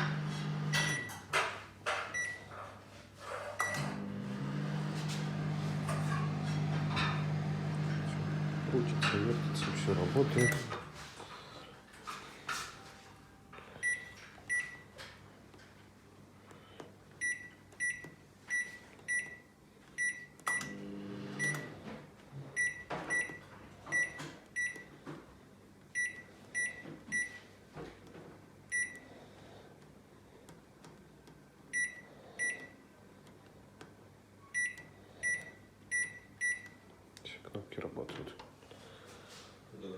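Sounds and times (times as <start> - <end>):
microwave oven beeping: 0.0 - 1.3, 2.1 - 2.5, 3.6 - 11.0, 12.8 - 15.0, 17.2 - 25.0, 25.9 - 27.6, 28.7 - 29.2, 31.6 - 33.0, 34.3 - 37.0.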